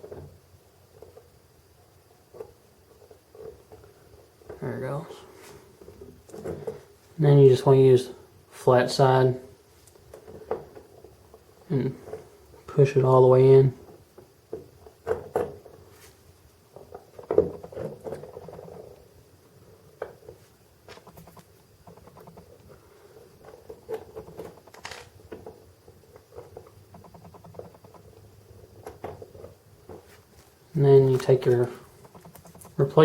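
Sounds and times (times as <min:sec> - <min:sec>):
small model parts clicking and tapping: 0:20.9 - 0:22.8, 0:23.4 - 0:30.0, 0:31.1 - 0:33.0.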